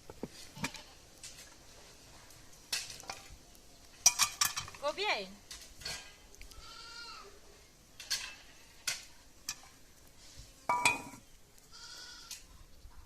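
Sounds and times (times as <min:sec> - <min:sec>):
pots and utensils clinking: 0:04.0 - 0:04.8, 0:05.5 - 0:06.2, 0:07.9 - 0:09.8, 0:10.7 - 0:11.2
goats bleating: 0:06.5 - 0:07.3, 0:11.7 - 0:12.4.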